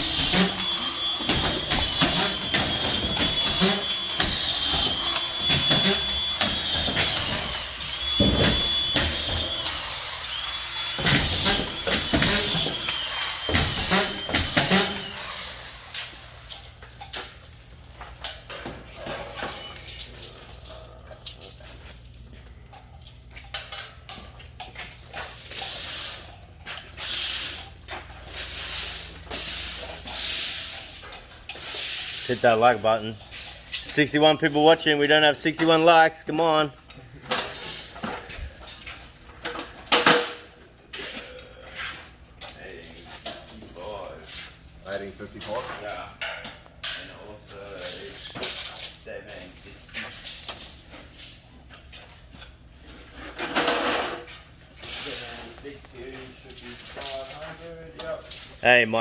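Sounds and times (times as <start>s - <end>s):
screw gun whining: 0.0s - 17.4s.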